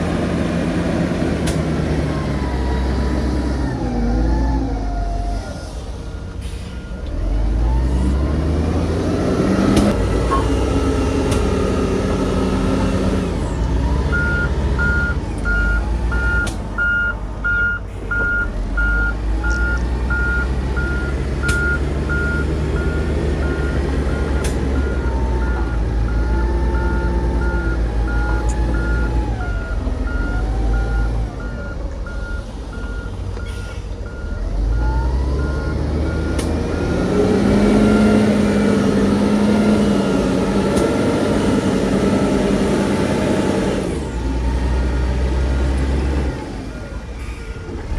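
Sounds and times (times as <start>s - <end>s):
diesel machinery running: 0.0s - 47.9s
reversing alarm beeping: 13.6s - 40.2s.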